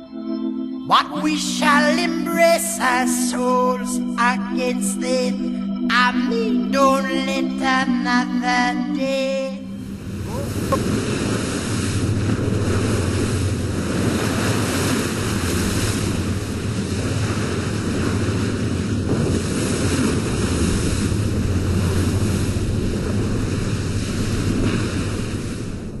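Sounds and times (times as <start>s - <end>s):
ocean surf breaking: 9.7s - 26.0s
wind on microphone: 9.8s - 26.0s.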